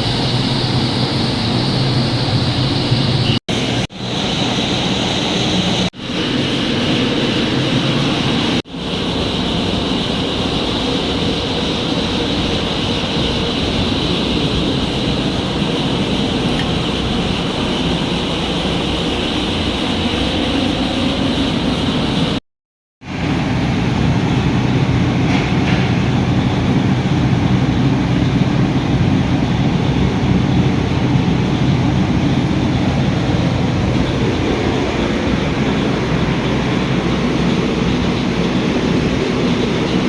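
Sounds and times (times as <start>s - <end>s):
engine knocking clatter: 24.0s - 40.0s.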